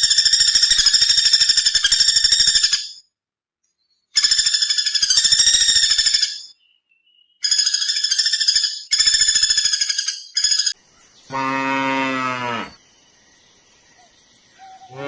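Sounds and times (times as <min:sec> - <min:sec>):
woodpecker drumming: 0:00.0 - 0:02.9, 0:04.2 - 0:06.5, 0:07.4 - 0:10.8.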